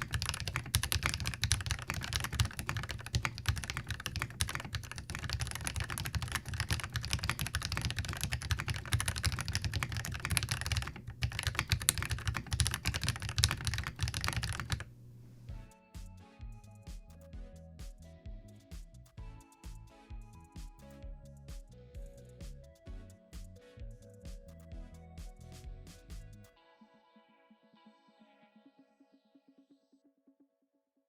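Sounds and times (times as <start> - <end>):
mechanical keyboard typing: 0.0 - 14.9.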